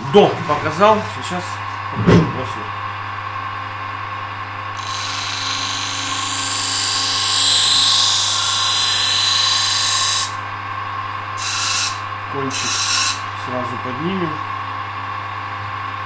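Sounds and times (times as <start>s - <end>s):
electric grinder humming: 4.7s - 10.4s, 11.4s - 13.3s
knife blade grinding hiss: 11.4s - 13.2s.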